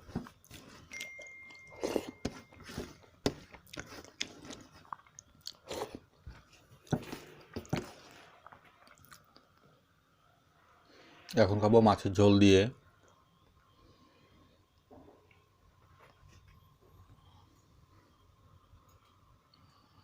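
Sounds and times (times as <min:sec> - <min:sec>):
person chewing food: 0:00.0 - 0:09.6.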